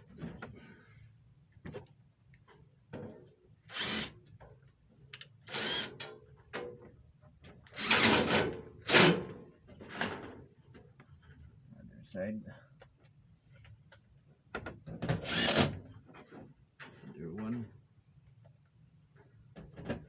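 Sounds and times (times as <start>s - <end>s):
power drill driving screws: 3.7s - 4.2s, 5.5s - 6.0s, 7.7s - 9.1s, 15.2s - 15.8s.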